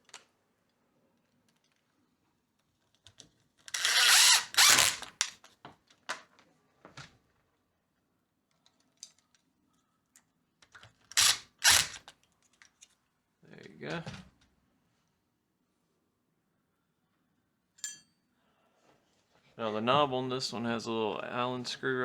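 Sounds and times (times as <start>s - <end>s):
power drill driving screws: 3.7s - 5.2s, 11.1s - 12.0s.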